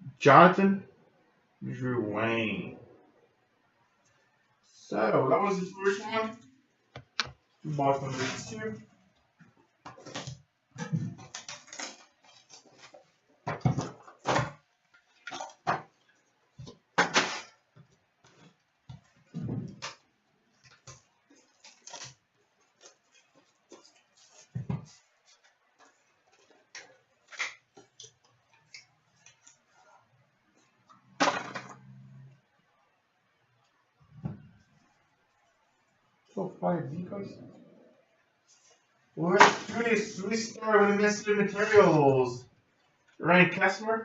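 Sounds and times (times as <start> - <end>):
cards and cardboard rustling: 20.6 - 30.0.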